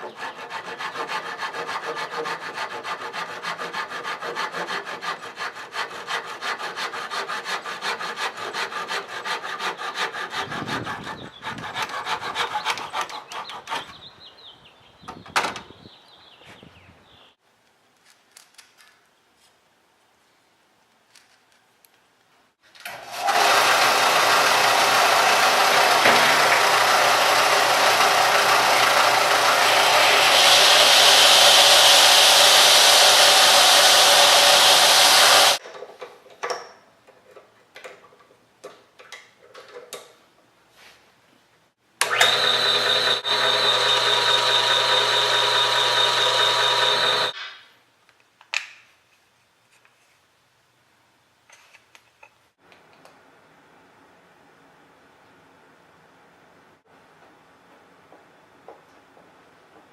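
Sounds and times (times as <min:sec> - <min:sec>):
power tool cutting wood: 0:22.8 - 0:35.6, 0:42.0 - 0:47.4.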